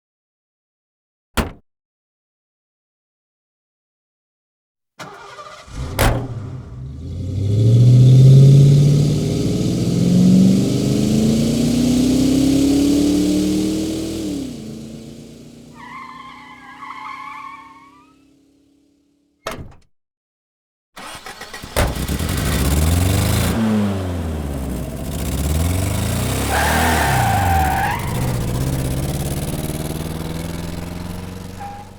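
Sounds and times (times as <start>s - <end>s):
sharp knock: 1.4s - 1.6s
car engine revving hard: 5.1s - 18.1s, 21.0s - 31.9s
tyre squeal: 15.7s - 18.3s, 26.5s - 28.7s, 31.2s - 31.9s.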